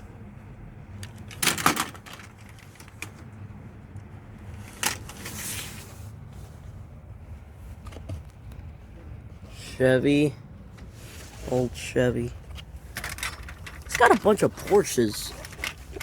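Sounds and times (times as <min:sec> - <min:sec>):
toy cars clicking and clattering: 0:01.0 - 0:03.2, 0:04.5 - 0:05.5, 0:12.6 - 0:16.0.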